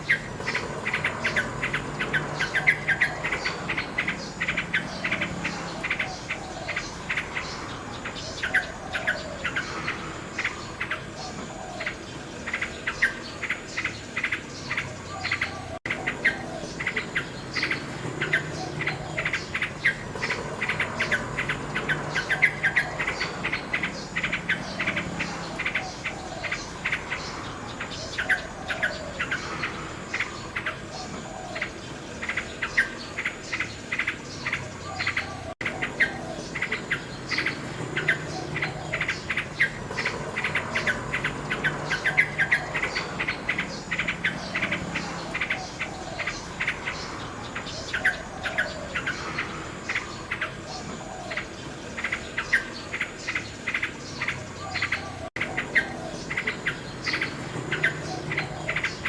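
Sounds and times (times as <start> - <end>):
insects chirping: 0.0 - 59.0
nightingale singing: 0.0 - 59.0.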